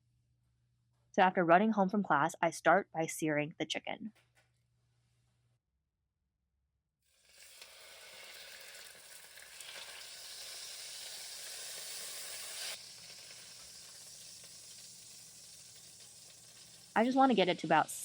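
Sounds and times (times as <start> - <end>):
chicken sizzling in a hot pan: 7.1 - 18.0.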